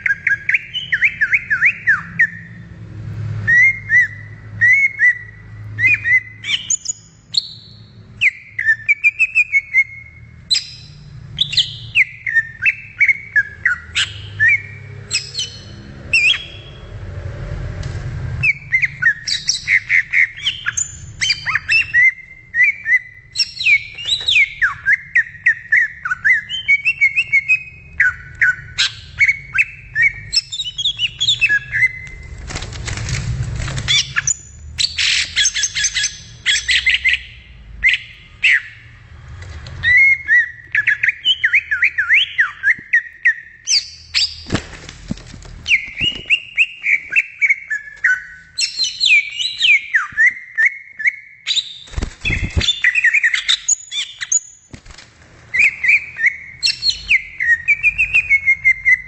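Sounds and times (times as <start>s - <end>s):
bird singing whistled notes: 0.0s - 2.7s, 3.5s - 16.9s, 18.4s - 32.3s, 33.9s - 38.8s, 39.8s - 44.5s, 45.7s - 54.6s, 55.6s - 59.0s
low rumble: 15.7s - 19.2s.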